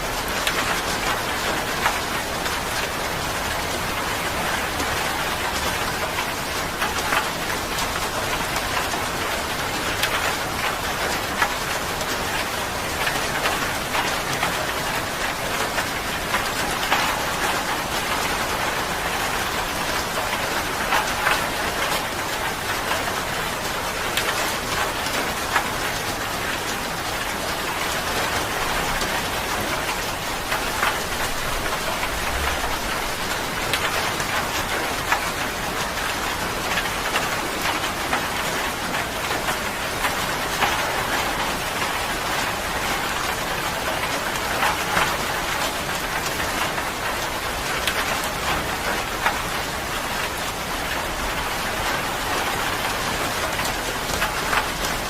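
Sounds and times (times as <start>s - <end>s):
steady rain pattering: 0.0s - 55.0s.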